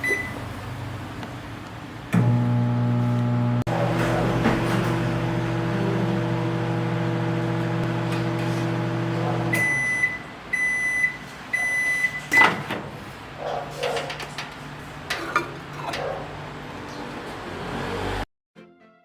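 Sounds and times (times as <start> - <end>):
microwave oven humming: 2.1 - 10.2.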